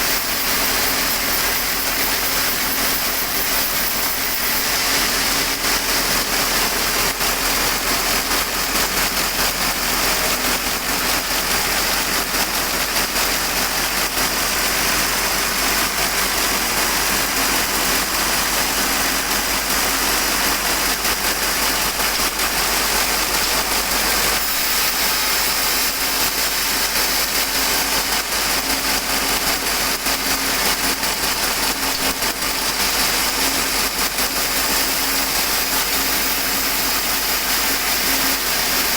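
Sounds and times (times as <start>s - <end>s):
sawmill machinery drone: 0.0s - 38.9s.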